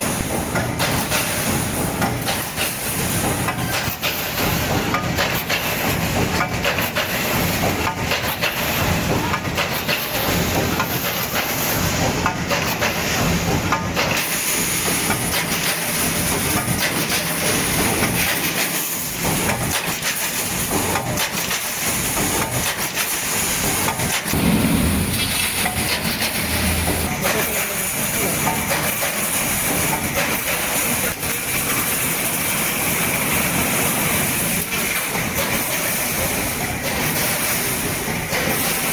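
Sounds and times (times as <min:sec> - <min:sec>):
welding machine clacking: 0:00.0 - 0:38.9.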